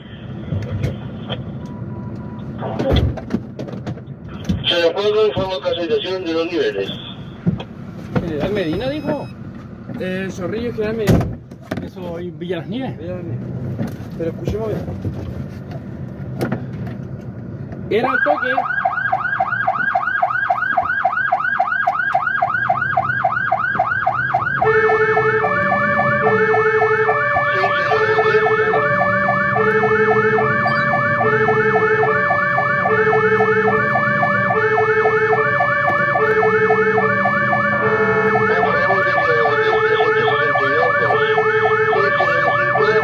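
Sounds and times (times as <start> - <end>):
fire engine electronic siren: 8.4 - 9.4, 17.9 - 43.0.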